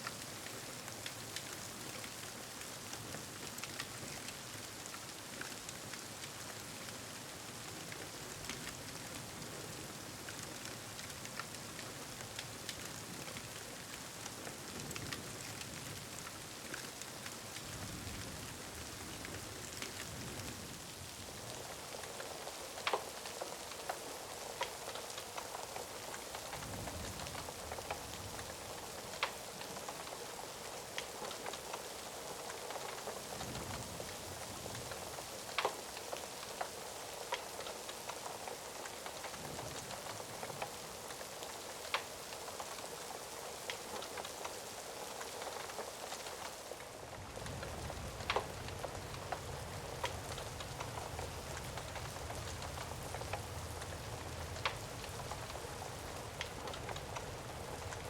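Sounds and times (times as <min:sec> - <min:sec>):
heavy rain: 0:00.0 - 0:58.0
crackling fire pops: 0:21.5 - 0:58.0.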